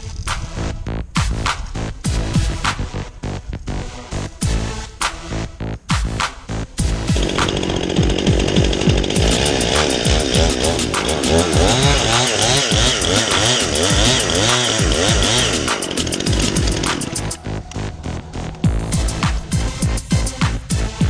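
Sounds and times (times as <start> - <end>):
chainsaw cutting: 6.8 - 17.4.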